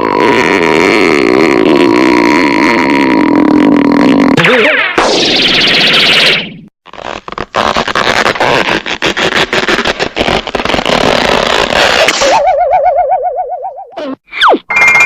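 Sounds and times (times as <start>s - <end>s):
warbling tone: 4.4s - 6.7s, 12.2s - 15.0s.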